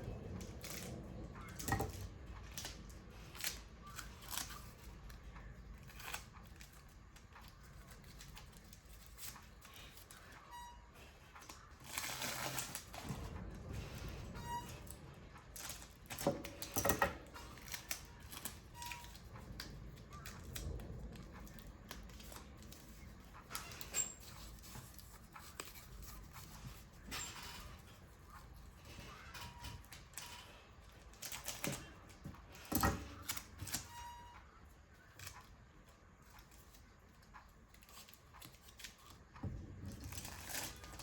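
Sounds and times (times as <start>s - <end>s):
hands handling paper and tools: 21.4s - 27.6s.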